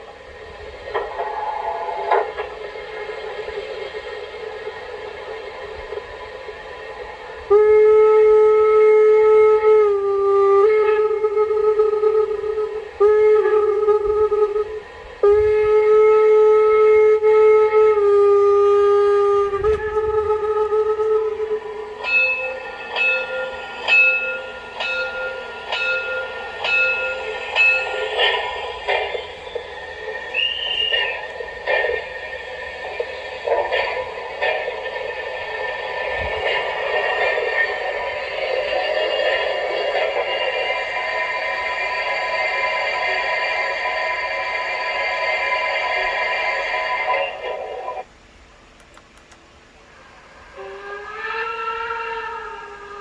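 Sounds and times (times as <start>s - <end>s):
hissing bursts: 0.0s - 48.0s
quiet hum: 0.0s - 53.0s
train horn through small speaker: 5.7s - 48.1s, 49.9s - 53.0s
ringing tone: 19.9s - 29.6s.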